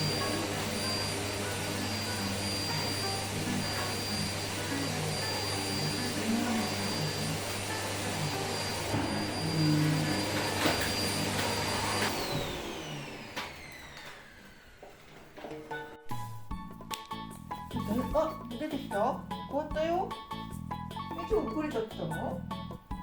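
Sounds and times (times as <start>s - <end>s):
vacuum cleaner whining: 0.0s - 16.2s.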